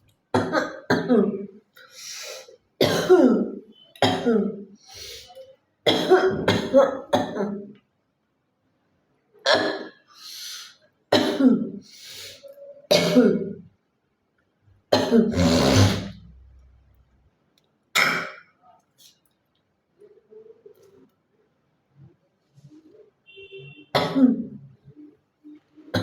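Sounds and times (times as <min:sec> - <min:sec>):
woman coughing: 0:00.4 - 0:01.5, 0:02.8 - 0:04.6, 0:05.9 - 0:07.7, 0:09.5 - 0:10.0, 0:11.1 - 0:11.8, 0:12.9 - 0:13.6, 0:14.9 - 0:16.1, 0:24.0 - 0:24.6
woman clearing her throat: 0:02.8 - 0:04.6, 0:05.9 - 0:07.7, 0:11.1 - 0:11.8, 0:12.9 - 0:13.6, 0:14.9 - 0:16.2, 0:18.0 - 0:18.6, 0:24.0 - 0:24.7.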